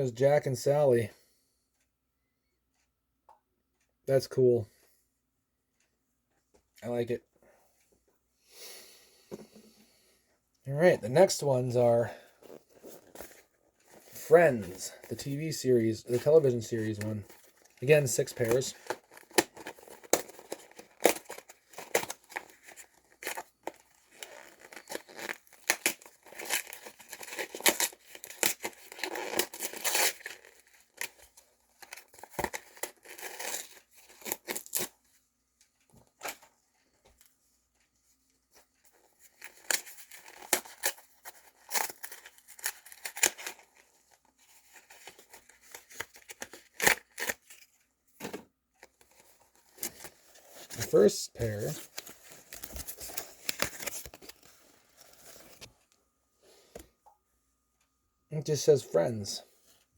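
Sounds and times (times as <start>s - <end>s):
packaging tearing and crinkling: 17.8s - 31.2s, 31.8s - 34.9s, 39.2s - 47.6s.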